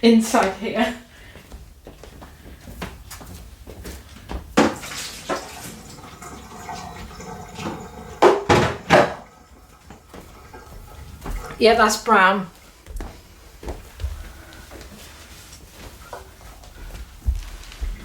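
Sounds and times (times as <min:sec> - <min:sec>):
water sloshing in plastic tray: 0:04.4 - 0:07.1, 0:08.3 - 0:13.2.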